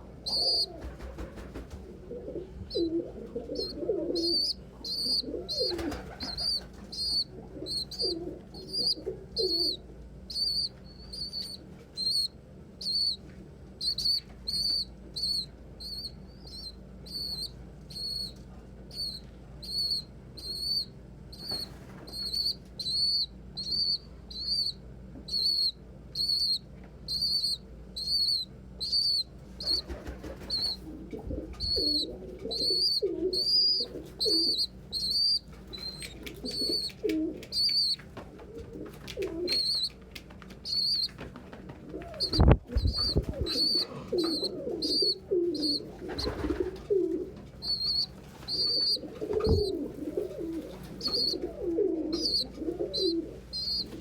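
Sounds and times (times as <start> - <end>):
pigeons cooing: 0.0 - 12.3, 28.2 - 54.0
young pigeon peeping: 0.0 - 54.0
wing flaps: 0.7 - 2.0, 5.5 - 6.9, 29.7 - 32.0, 38.1 - 44.2, 46.0 - 47.2.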